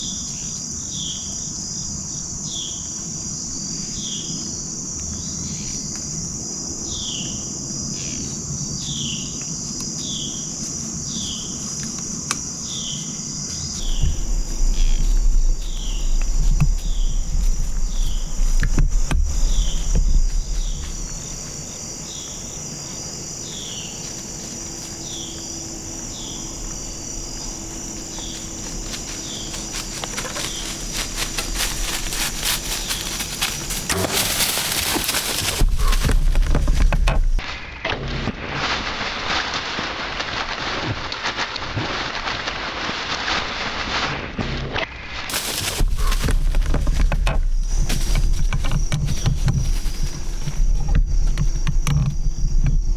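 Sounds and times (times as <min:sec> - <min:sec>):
crickets trilling: 0:00.0 - 0:37.4, 0:45.3 - 0:52.9
low rumble: 0:13.8 - 0:22.0
short falling insect chirp: 0:13.8 - 0:37.4, 0:45.3 - 0:52.9
rustling crackles: 0:13.8 - 0:37.5, 0:45.2 - 0:52.9.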